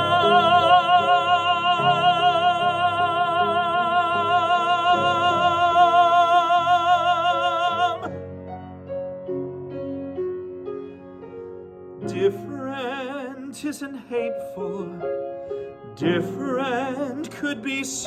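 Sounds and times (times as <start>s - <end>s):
person singing a long note: 0.0s - 8.1s
piano accompaniment: 0.0s - 18.0s.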